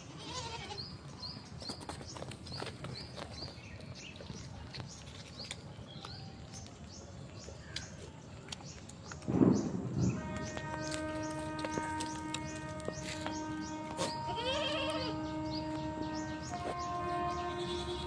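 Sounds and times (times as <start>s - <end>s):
small birds chirping: 0.3s - 18.0s
loud low sound: 9.3s - 13.7s.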